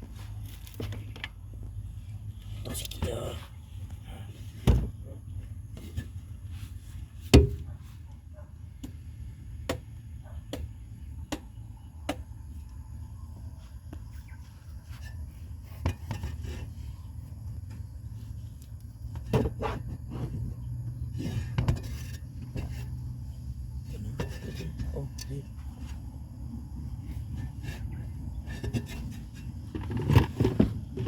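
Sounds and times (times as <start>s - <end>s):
steady low hum: 0.0s - 31.0s
tool striking knocks: 7.3s - 7.7s.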